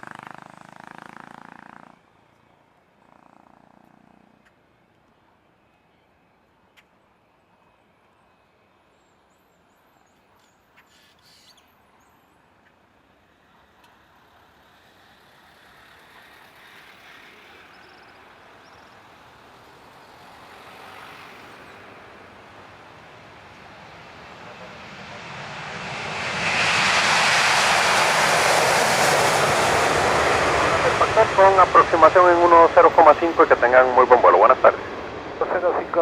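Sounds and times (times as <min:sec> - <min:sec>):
jet engines at takeoff: 0:13.6 - 0:36.0.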